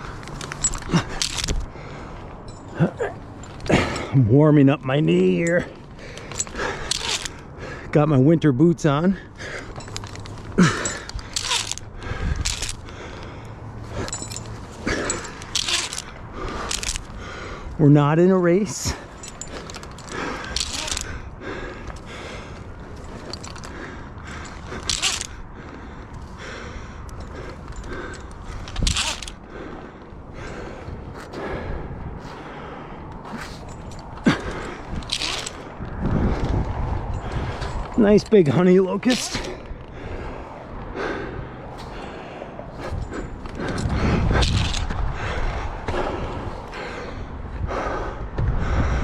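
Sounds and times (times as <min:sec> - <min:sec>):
metal climbing hardware clinking: 0:00.0 - 0:47.2.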